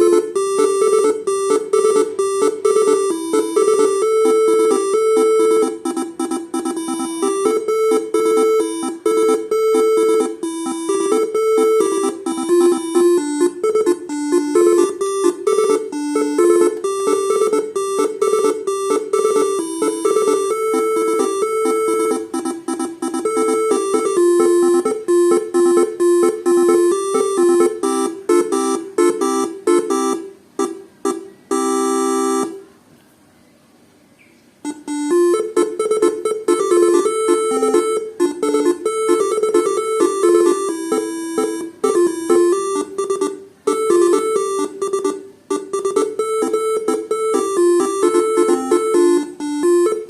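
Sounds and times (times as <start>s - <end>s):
horn playing a melody: 0.0s - 30.3s, 34.7s - 43.0s.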